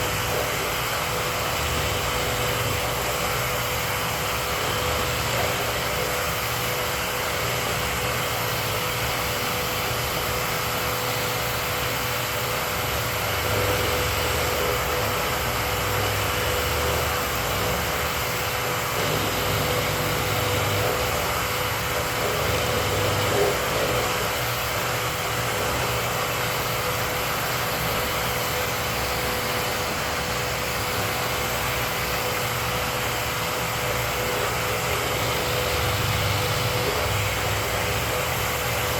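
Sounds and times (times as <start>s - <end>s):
vacuum running: 0.0s - 38.9s.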